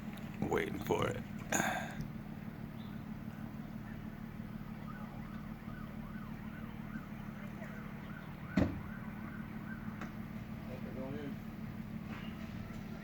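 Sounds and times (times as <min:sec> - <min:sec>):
emergency vehicle siren wailing: 0:03.2 - 0:13.0.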